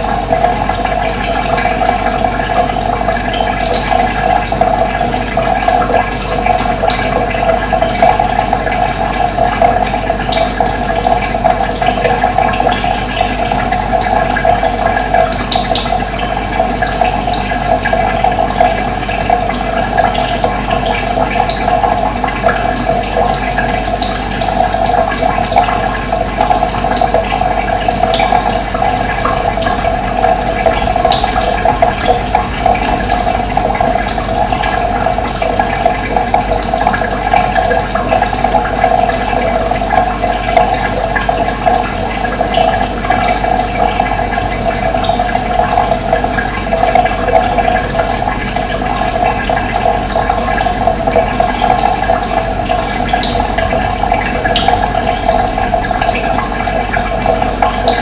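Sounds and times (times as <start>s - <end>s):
rushing running water: 0.0s - 58.0s.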